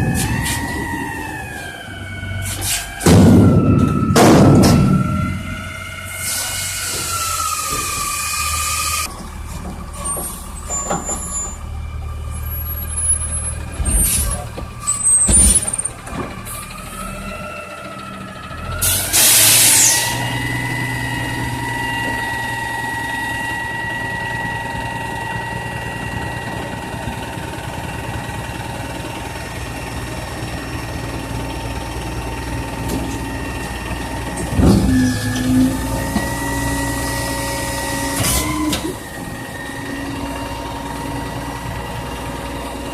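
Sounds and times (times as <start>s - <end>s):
garbage truck engine running: 0.0s - 42.9s
air brake hiss: 2.4s - 2.9s, 6.1s - 7.0s, 18.8s - 20.2s
clanks and bangs: 3.0s - 8.4s, 13.6s - 16.6s.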